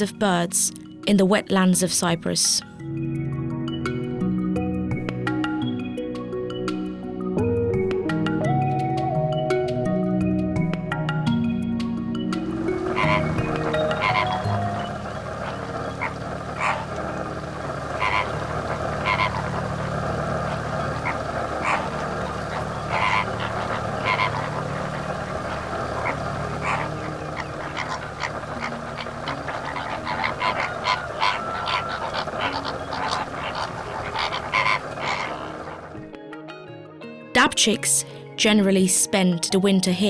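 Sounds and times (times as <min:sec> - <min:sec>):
chorus of croaking frogs: 0:12.4 - 0:36.2.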